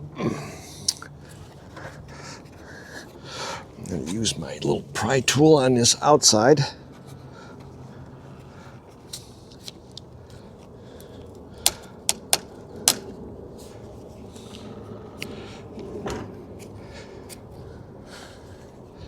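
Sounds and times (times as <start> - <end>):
pry tool clicking on car trim: 11.6 - 13.0.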